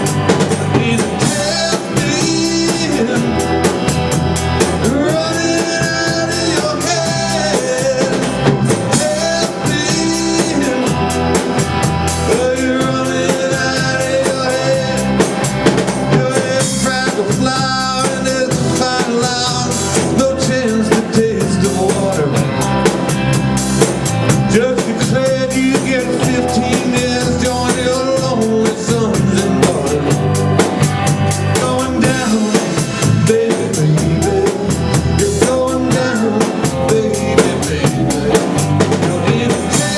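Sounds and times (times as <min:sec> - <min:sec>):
band playing live: 0:00.0 - 0:39.9
drum kit steady beat: 0:00.0 - 0:39.9.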